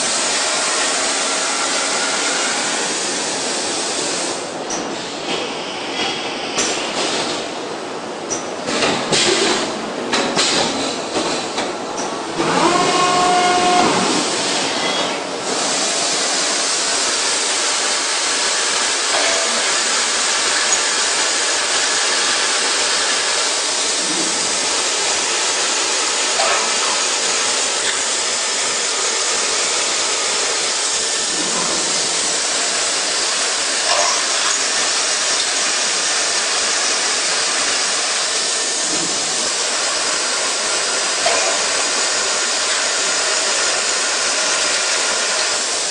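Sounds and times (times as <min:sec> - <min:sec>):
machine steady hiss: 0:13.4 - 0:45.9.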